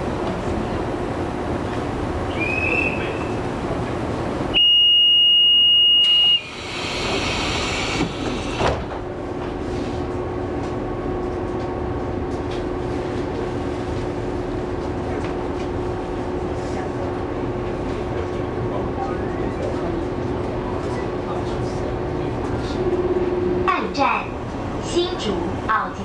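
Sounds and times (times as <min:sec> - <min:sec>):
train wheels rumbling on rail: 0:00.0 - 0:04.6, 0:06.0 - 0:26.0
loud high-pitched beep: 0:04.6 - 0:06.5
steady hum: 0:18.7 - 0:26.0.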